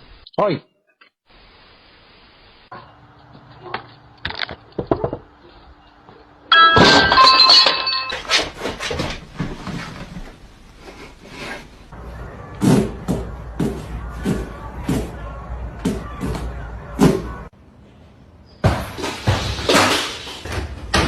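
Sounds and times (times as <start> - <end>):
loud crash with ringing clatter: 6.5 - 8.4
scattered clinks and knocks: 6.5 - 8.5.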